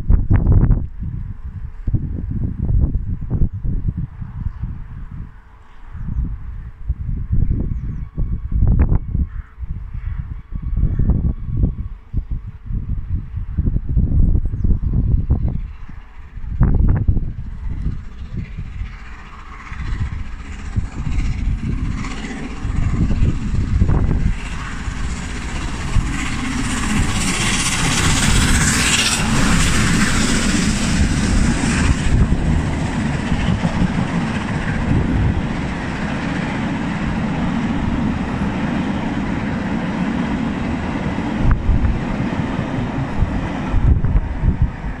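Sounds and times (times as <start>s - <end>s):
train wheels rumbling on rail: 0.0s - 45.0s
steam hiss: 22.7s - 34.8s.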